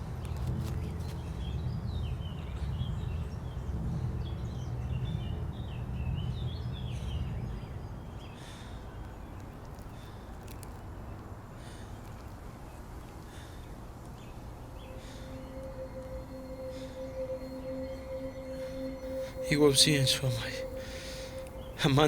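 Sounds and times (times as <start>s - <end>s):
small birds chirping: 4.2s - 16.3s.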